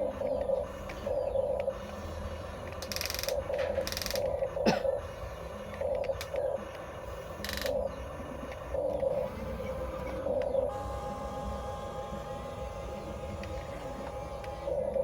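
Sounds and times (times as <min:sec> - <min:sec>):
small electric motors whining: 0:05.1 - 0:15.0
higher buzzing bursts: 0:10.7 - 0:14.8.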